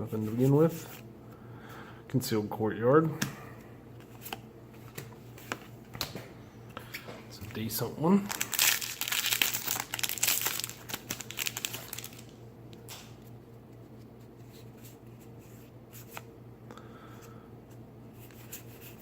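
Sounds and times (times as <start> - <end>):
low steady hum: 0.0 - 19.0
foil wrapper crinkling and tearing: 8.2 - 12.4.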